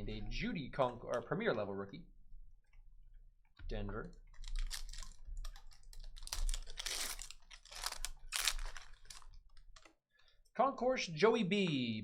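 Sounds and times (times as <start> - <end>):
trading cards rustling and sliding: 4.6 - 9.9.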